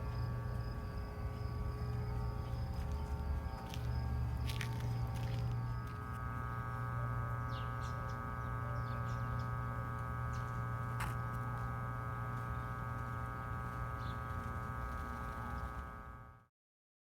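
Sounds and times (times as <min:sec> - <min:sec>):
electrical hum: 0:00.0 - 0:16.5.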